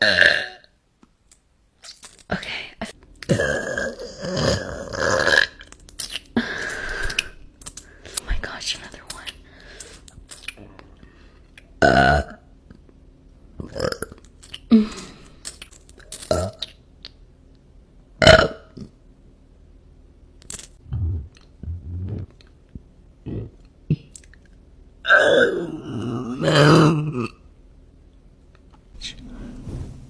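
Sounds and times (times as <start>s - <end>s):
woman burping: 3.2s - 5.6s, 25.1s - 27.4s.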